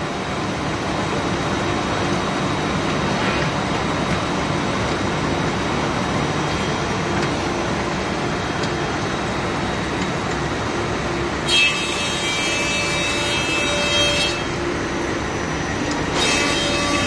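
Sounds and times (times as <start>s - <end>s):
wood through cutters whine: 0.0s - 17.0s.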